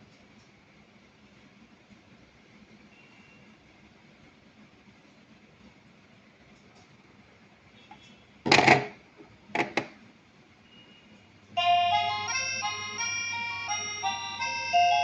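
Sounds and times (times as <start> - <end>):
electronic ringtone melody: 11.6 - 15.0.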